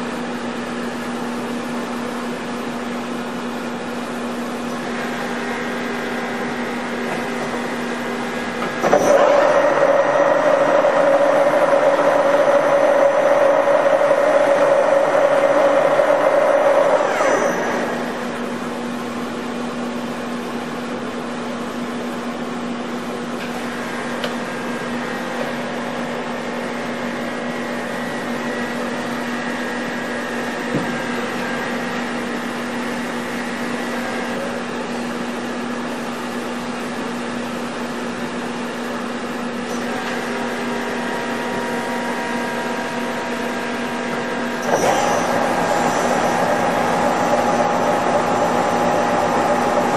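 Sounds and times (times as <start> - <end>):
low machine hum: 0.0 - 49.9
milling machine whine: 0.0 - 49.9.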